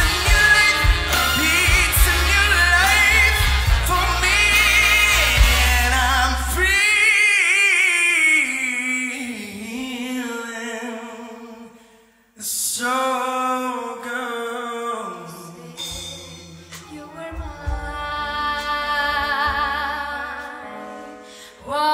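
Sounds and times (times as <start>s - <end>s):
big band playing: 0.0s - 7.1s
person singing: 0.0s - 11.8s, 12.4s - 21.9s.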